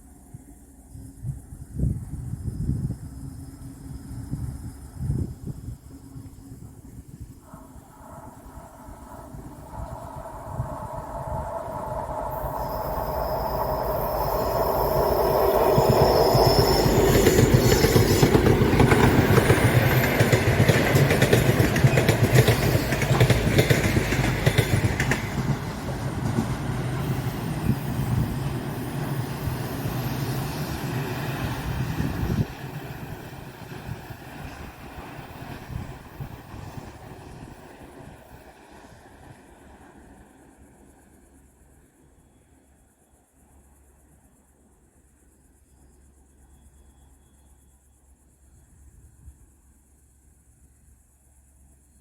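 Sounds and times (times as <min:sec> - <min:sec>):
train wheels rolling: 0:07.5 - 0:39.8
wheels squealing on curve: 0:09.0 - 0:20.1.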